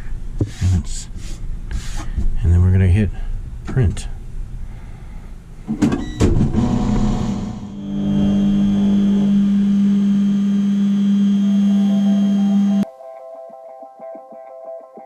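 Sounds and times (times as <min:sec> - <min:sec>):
stepper motor hum: 0:06.5 - 0:12.8.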